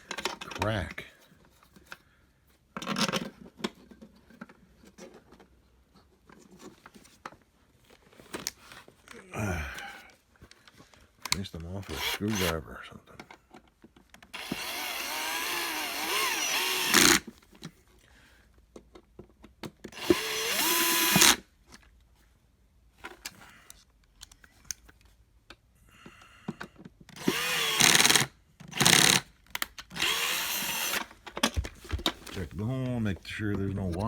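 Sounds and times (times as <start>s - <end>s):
power drill whining: 11.8s - 12.5s, 14.3s - 17.3s, 19.9s - 21.4s, 27.1s - 32.5s.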